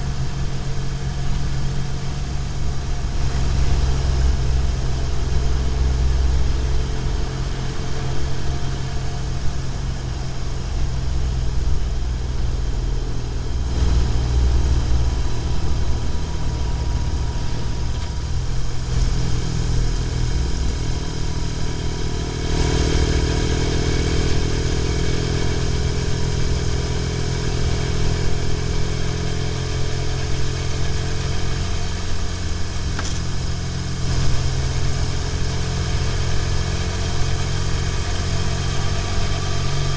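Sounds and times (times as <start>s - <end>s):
motorcycle engine running: 0.0s - 39.9s
road and wind noise: 0.0s - 39.9s
bright rushing sound with hum: 9.4s - 28.7s.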